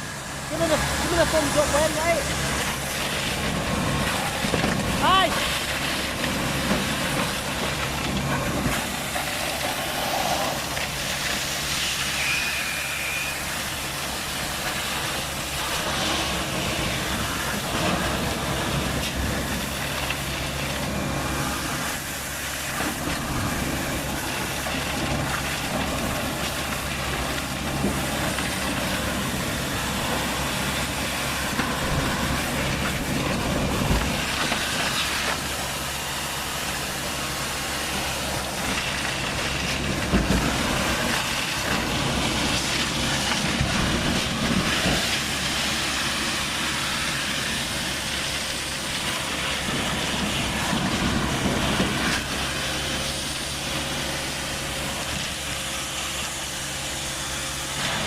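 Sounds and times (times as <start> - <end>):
broad hiss: 0.0 - 58.0
truck engine hum: 0.0 - 58.0.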